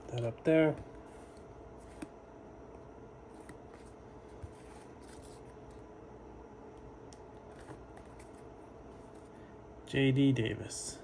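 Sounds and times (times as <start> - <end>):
faint steady hum: 0.0 - 11.0
trading cards rustling and sliding: 3.3 - 5.8.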